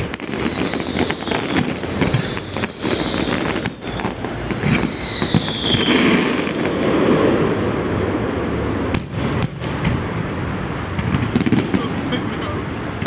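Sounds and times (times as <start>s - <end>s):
high whistle gliding down: 0.0s - 6.5s
fireworks bangs and crackling: 0.0s - 13.0s.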